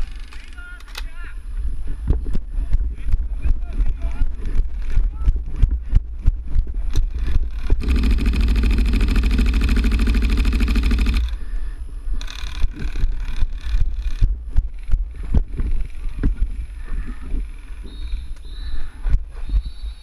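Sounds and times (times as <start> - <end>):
airsoft gun full-auto burst: 7.5 - 11.4.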